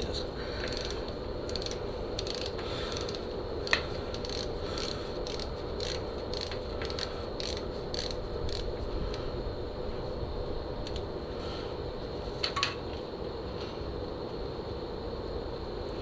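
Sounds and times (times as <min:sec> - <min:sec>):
steady background hiss: 0:00.0 - 0:16.0
ratchet wrench clicking: 0:00.6 - 0:09.2.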